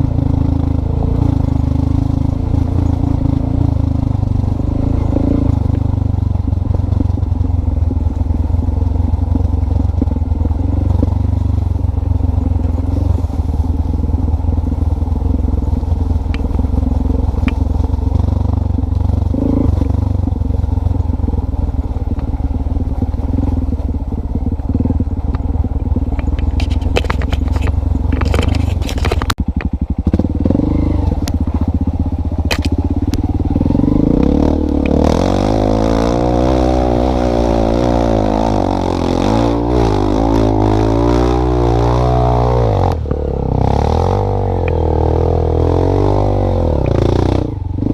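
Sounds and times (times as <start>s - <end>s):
engine running steadily: 0.0s - 47.9s
clicks and rattles: 26.1s - 29.7s.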